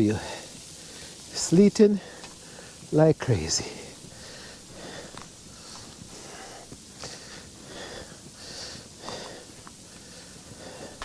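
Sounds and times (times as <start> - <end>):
sleet hissing: 0.0 - 11.0
person sniffing and breathing: 4.1 - 11.0.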